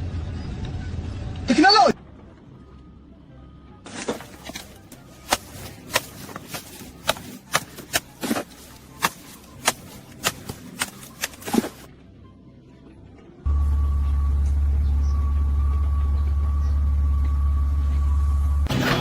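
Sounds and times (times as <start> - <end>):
sharp irregular knocks: 4.2 - 11.9
loud low hum: 13.5 - 19.0.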